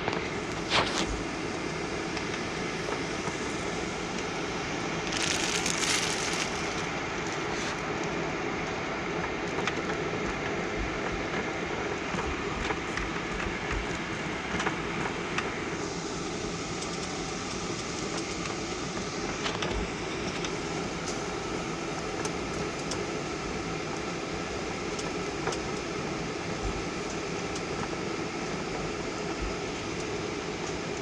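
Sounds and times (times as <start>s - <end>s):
jet engines running: 0.0s - 22.2s.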